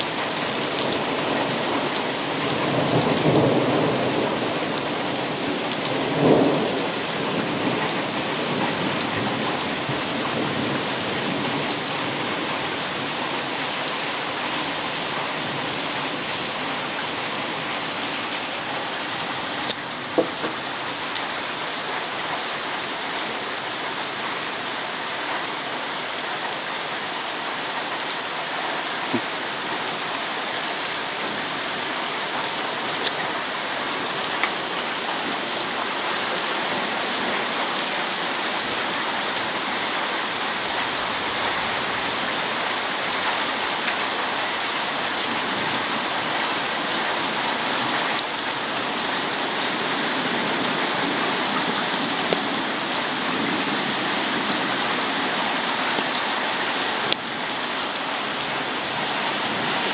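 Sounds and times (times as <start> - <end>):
heavy rain pouring: 0.0 - 59.9
thunderclap: 0.7 - 11.6.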